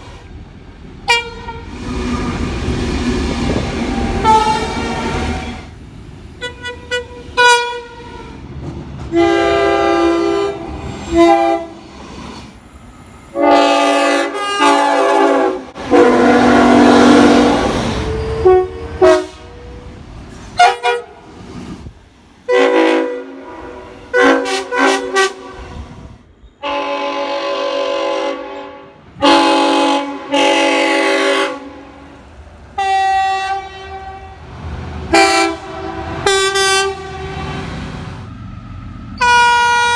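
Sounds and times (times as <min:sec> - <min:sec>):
passing train rushing: 0:00.0 - 0:39.9
train horn blasts: 0:01.0 - 0:01.7, 0:03.5 - 0:05.7, 0:06.4 - 0:08.4, 0:09.1 - 0:11.9, 0:13.3 - 0:19.8, 0:20.6 - 0:21.3, 0:22.5 - 0:26.0, 0:26.6 - 0:32.1, 0:32.8 - 0:34.4, 0:35.1 - 0:37.8, 0:39.2 - 0:39.9.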